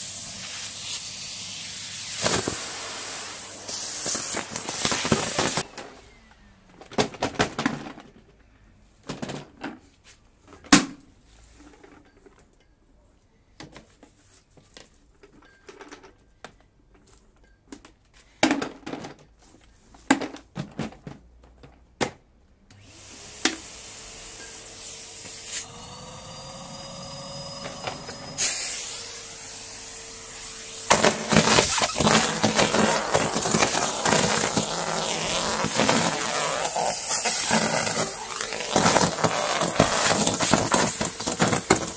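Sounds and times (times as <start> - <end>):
dry leaves sucked up a hose: 0.0 - 5.6, 24.8 - 41.9
vacuum cleaner motor humming: 2.2 - 5.6, 22.8 - 41.9.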